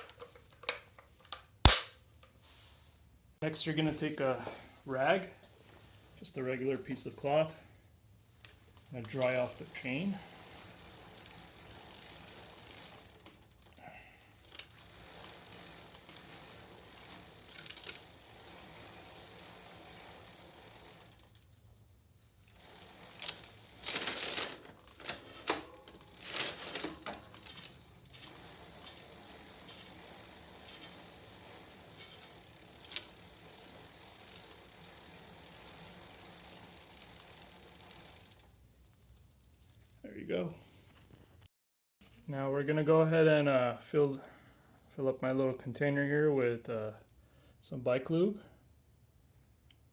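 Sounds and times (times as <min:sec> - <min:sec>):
rag scrubbing bicycle chain: 0:03.5 - 0:07.7, 0:08.4 - 0:39.2
steady high-pitched trill: 0:08.9 - 0:37.2.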